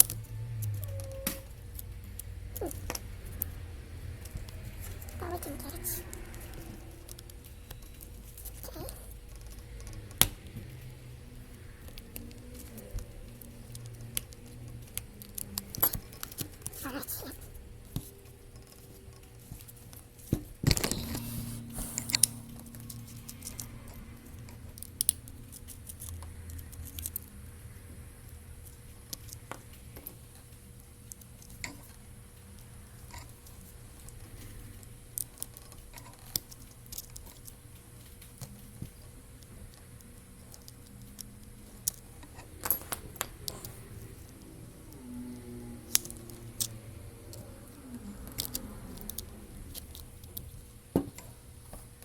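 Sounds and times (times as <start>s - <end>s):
low electrical hum: 0.0s - 52.0s.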